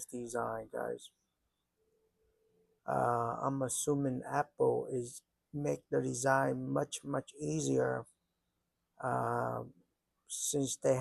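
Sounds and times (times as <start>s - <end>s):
man speaking: 0.0s - 1.1s, 2.9s - 8.0s, 9.0s - 9.7s, 10.3s - 11.0s.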